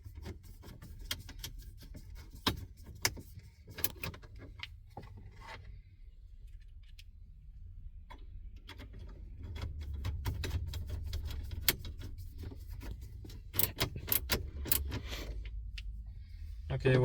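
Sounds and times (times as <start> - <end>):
low steady rumble: 0.0 - 17.0
metallic clicks and rattles: 8.6 - 15.0.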